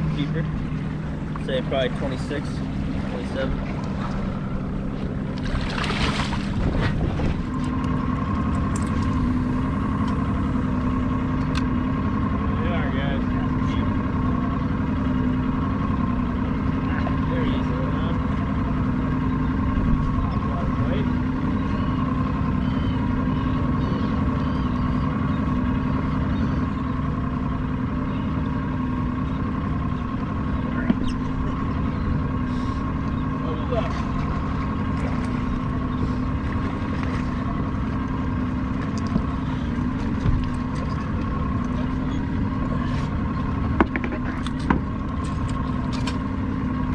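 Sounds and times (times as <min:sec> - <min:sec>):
rush of wind or water: 0:00.0 - 0:12.6
boat motor running: 0:00.0 - 0:46.9.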